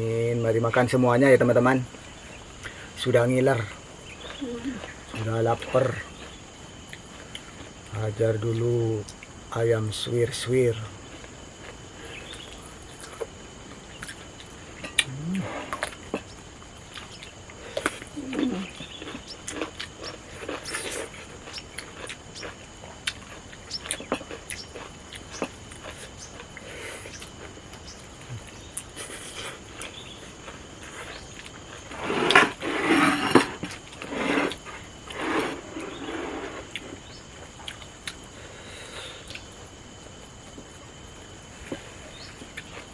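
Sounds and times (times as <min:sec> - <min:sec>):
chewing and smacking: 0:11.0 - 0:32.6, 0:33.6 - 0:38.3
fingers and food on plate: 0:14.0 - 0:37.0.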